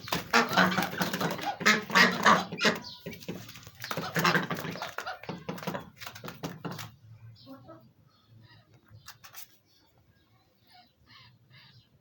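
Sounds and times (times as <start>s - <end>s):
ducks quacking: 0.0s - 6.0s.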